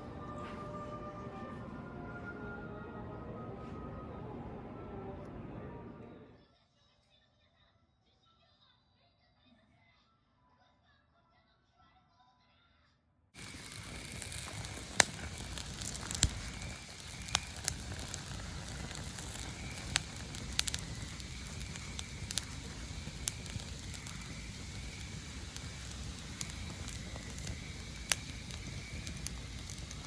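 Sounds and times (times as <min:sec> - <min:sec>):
campfire crackling: 0:13.4 - 0:30.0.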